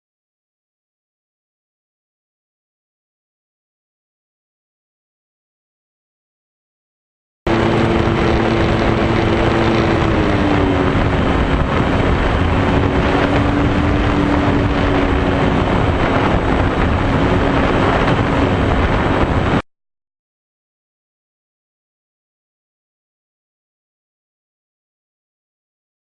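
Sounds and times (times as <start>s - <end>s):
motor and propeller hum: 7.5s - 19.6s
wind rush over microphone: 7.5s - 19.6s.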